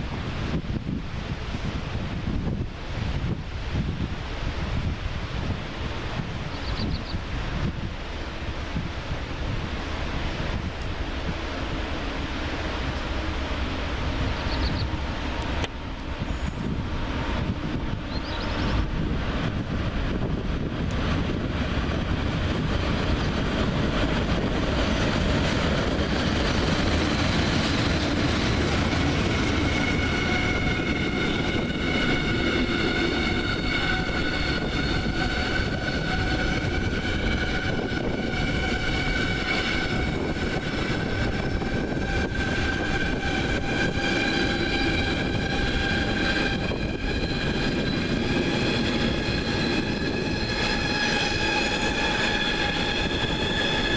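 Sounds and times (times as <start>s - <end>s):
train wheels rumbling on rail: 0.0s - 53.9s.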